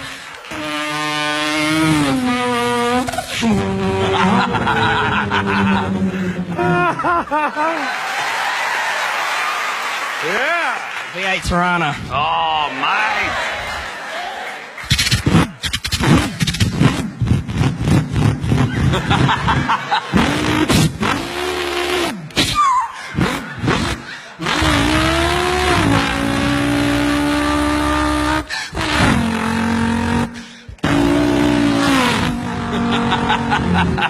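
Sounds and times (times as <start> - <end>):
race car engine revving: 0.0 - 6.6, 14.9 - 22.6, 23.2 - 34.0.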